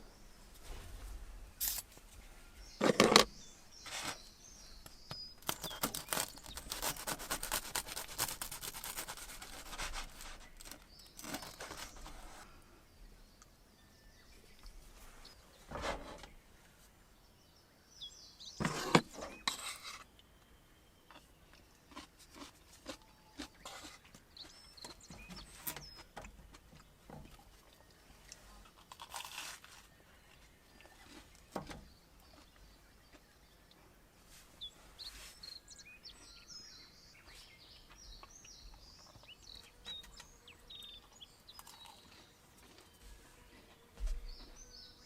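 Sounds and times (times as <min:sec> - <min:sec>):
small birds chirping: 0:00.0 - 0:45.0
small clicks and crunches: 0:04.8 - 0:12.2, 0:21.1 - 0:33.2.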